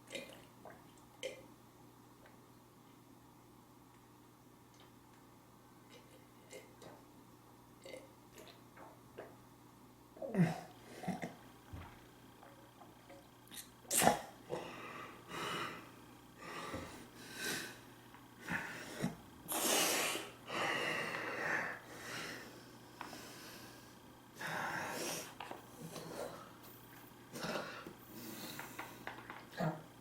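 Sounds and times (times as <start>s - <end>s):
person breathing and snorting: 14.5s - 17.8s, 18.4s - 26.5s.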